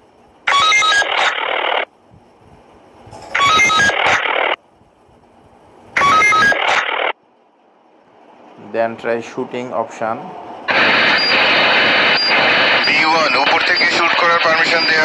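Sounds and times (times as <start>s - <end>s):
radio static burst: 0.5s - 1.9s, 3.3s - 4.6s, 6.0s - 7.2s, 10.7s - 15.0s
short beeps: 3.4s - 4.0s, 6.0s - 6.8s.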